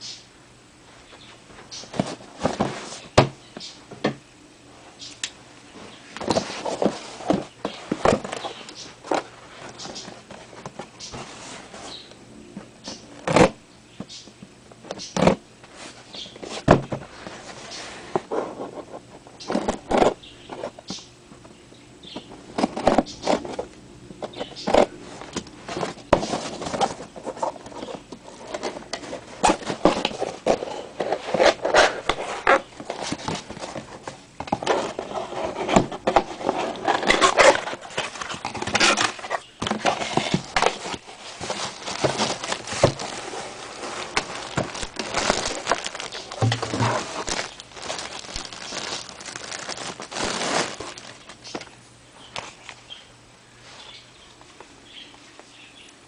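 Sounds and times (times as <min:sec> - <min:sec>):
packaging rustling and clicking: 0:06.2 - 0:12.0, 0:22.1 - 0:51.7.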